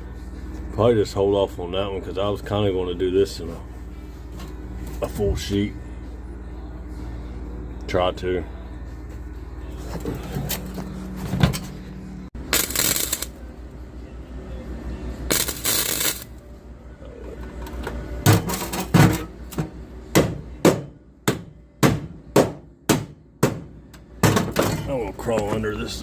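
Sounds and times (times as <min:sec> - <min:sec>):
hammer on sheet metal: 0:20.1 - 0:24.5.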